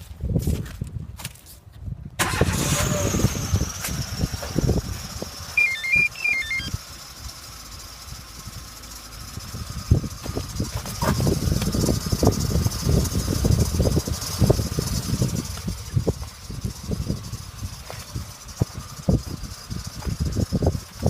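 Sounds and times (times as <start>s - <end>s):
car engine starting and idling: 2.2s - 21.0s
short chirping sound: 5.6s - 6.7s
thin high whistle: 5.6s - 6.7s.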